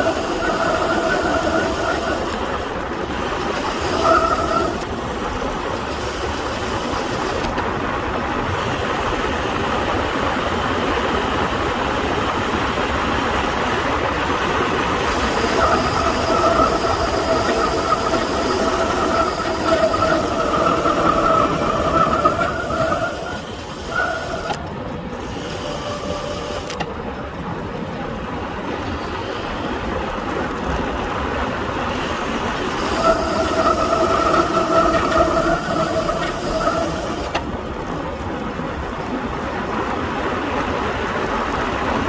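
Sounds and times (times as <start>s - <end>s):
bicycle disc brakes squealing: 0.0s - 5.0s, 14.9s - 26.9s, 31.9s - 37.4s
rushing wind and road noise: 0.0s - 42.0s.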